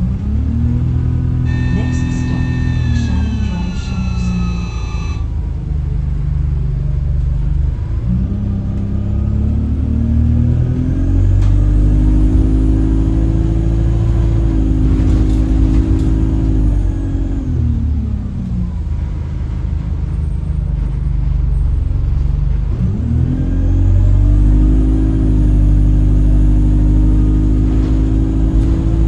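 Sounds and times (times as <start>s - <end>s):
bus engine drone: 0.0s - 29.0s
horn-like hum: 1.4s - 5.4s.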